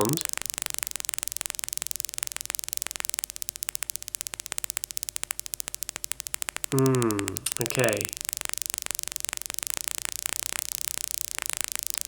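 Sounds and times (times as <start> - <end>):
faint steady hum: 0.0 - 12.0
synthesized clicks: 6.7 - 8.2.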